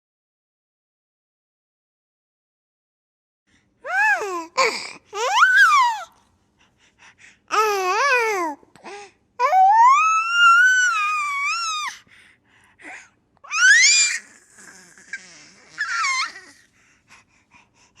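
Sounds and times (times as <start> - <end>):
baby squealing: 5.2 - 6.0, 9.6 - 11.9, 13.5 - 16.6.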